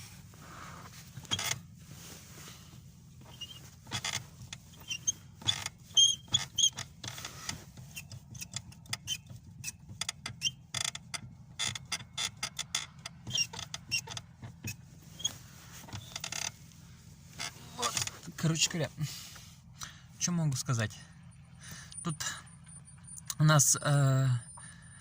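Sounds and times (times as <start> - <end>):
clutch pedal squeaking: 0.5 - 1.8, 3.1 - 18.7.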